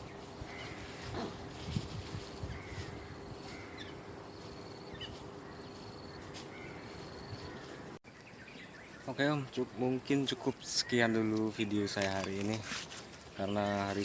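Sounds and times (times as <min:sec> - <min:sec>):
insect drone: 0:00.0 - 0:08.0
bird chirps: 0:04.8 - 0:09.6.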